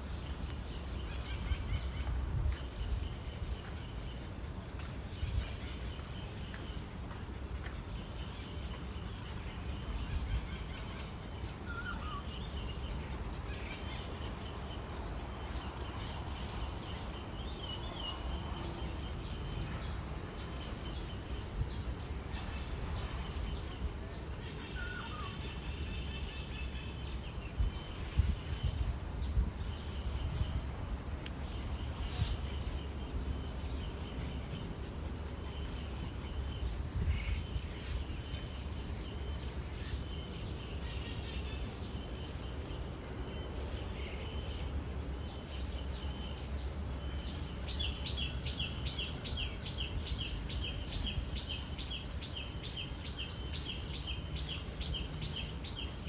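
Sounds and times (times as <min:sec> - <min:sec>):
cicadas singing: 0:00.0 - 0:56.0
bird chirps and calls: 0:11.6 - 0:12.8, 0:24.6 - 0:26.6.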